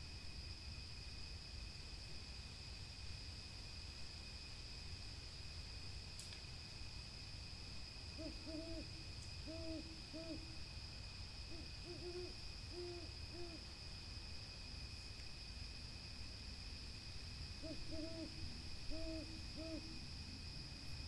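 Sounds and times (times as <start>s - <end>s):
owl hooting: 8.2s - 10.5s, 11.5s - 13.6s, 17.6s - 19.9s.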